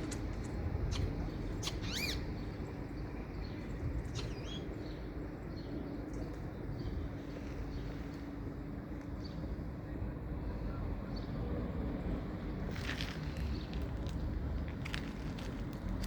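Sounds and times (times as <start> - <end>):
starling clicks: 0.0 - 1.1
starling whistles: 0.9 - 2.2.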